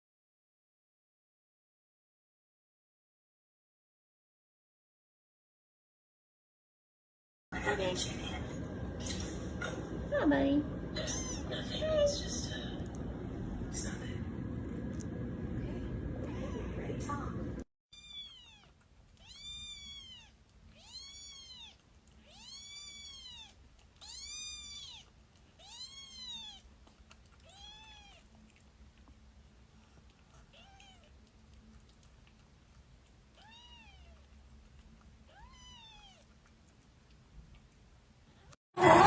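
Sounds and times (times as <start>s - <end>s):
kitten meowing: 11.0s - 11.5s, 17.9s - 26.7s, 27.4s - 28.3s, 30.5s - 31.1s, 33.3s - 34.3s, 35.3s - 36.2s.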